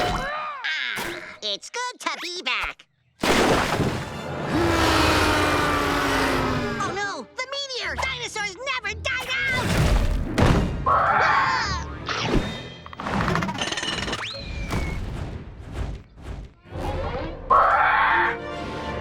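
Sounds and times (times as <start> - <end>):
thuds and crashes: 9.6 - 10.8, 14.6 - 16.6.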